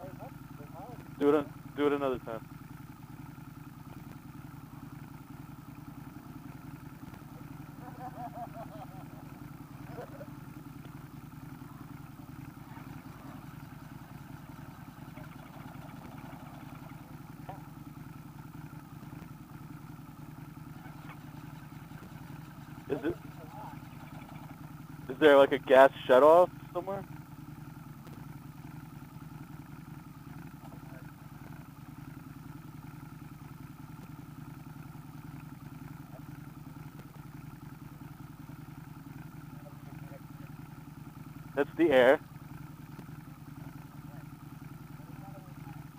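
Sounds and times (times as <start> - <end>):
motorbike engine idling: 0.0 - 45.9.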